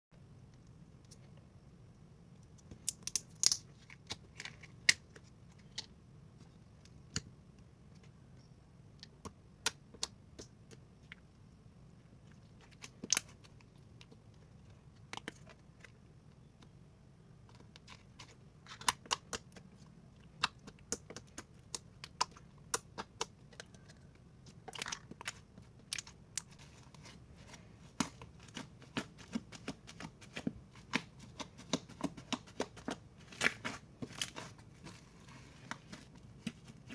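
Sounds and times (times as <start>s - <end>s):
slime squishing with clicks and pops: 2.4s - 5.8s, 8.9s - 11.3s, 18.7s - 26.6s.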